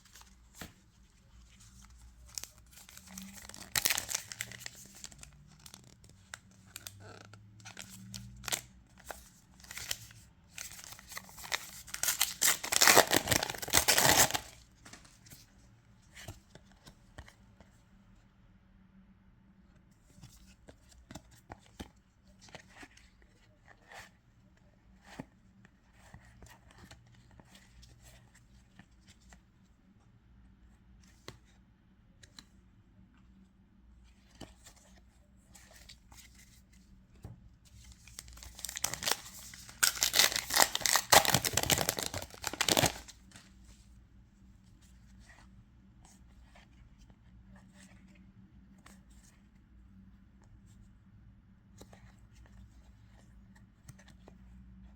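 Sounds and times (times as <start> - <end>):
wrapper tearing open: 2.3 - 5.9, 10.6 - 14.6, 38.2 - 43.1.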